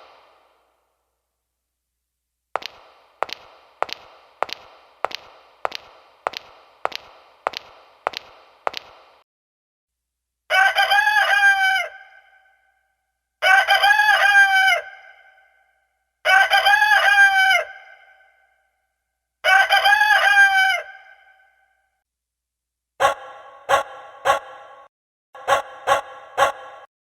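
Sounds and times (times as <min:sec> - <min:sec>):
rooster crowing: 0:10.5 - 0:12.4, 0:13.4 - 0:15.2, 0:16.3 - 0:18.2, 0:19.4 - 0:21.3.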